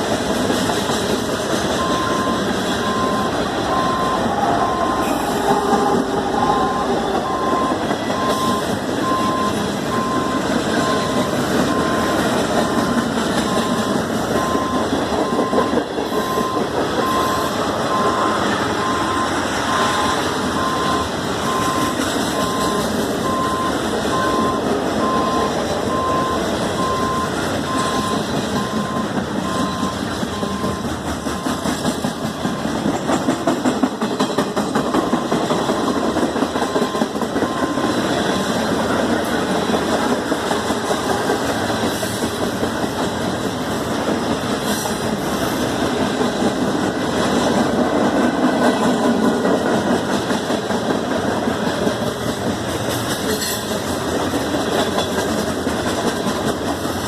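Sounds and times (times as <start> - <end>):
freight train wheels rumbling: 0.0 - 57.0
regular beeping tone: 1.8 - 32.9, 35.0 - 38.3.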